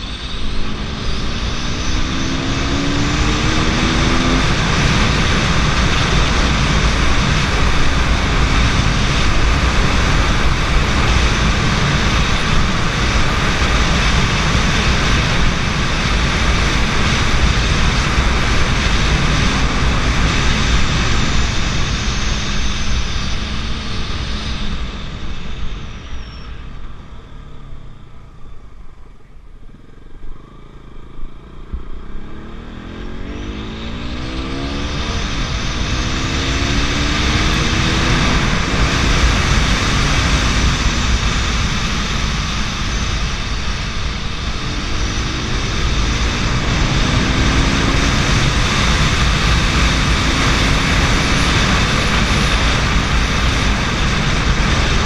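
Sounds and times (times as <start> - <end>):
wind rush over microphone: 0.0 - 27.1, 31.1 - 55.0
motorcycle engine accelerating: 0.0 - 55.0.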